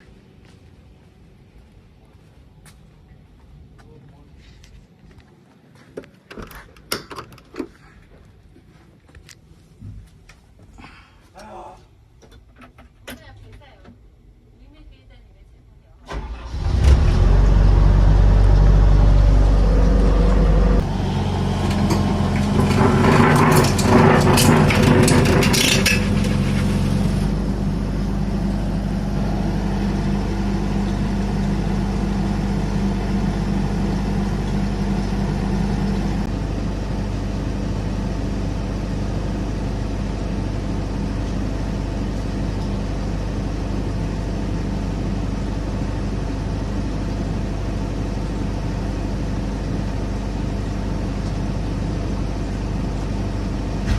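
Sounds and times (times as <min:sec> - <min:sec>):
excavator diesel engine idling: 0:16.2 - 0:53.9.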